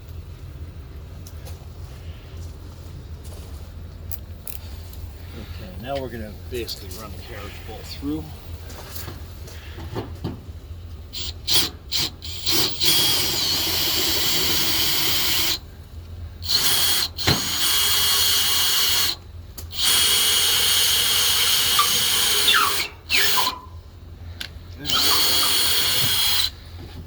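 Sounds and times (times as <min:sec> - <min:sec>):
power drill running: 0:11.1 - 0:15.7, 0:16.4 - 0:23.7, 0:24.8 - 0:26.8.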